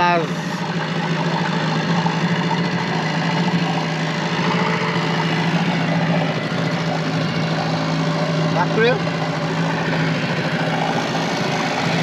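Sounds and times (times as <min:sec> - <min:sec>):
boat motor humming: 0:00.0 - 0:12.0.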